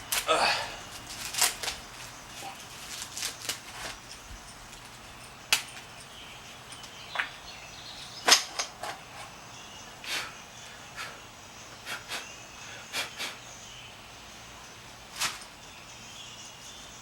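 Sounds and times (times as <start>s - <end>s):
tools and brake parts clicking: 8.1s - 9.4s.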